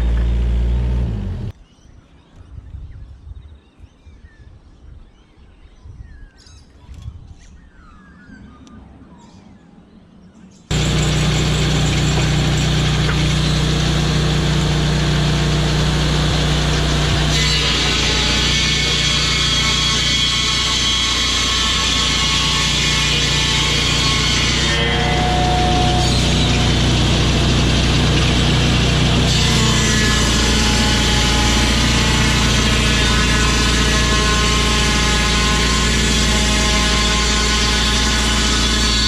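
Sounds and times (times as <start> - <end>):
engine-driven saw milling timber: 0.0 - 1.5, 10.7 - 39.0.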